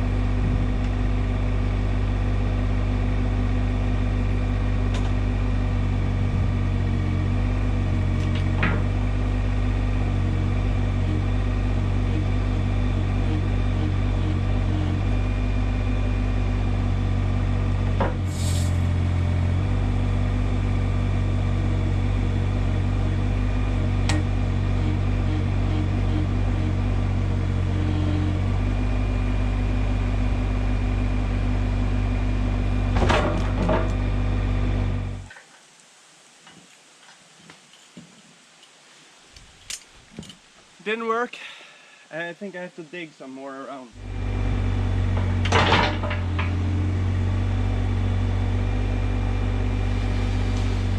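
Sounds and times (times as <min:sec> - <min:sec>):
excavator diesel engine running: 0:00.0 - 0:35.3, 0:43.9 - 0:50.9
short hiss: 0:18.3 - 0:18.9
knocks and creaks: 0:36.4 - 0:38.8, 0:39.4 - 0:40.6, 0:45.0 - 0:46.8.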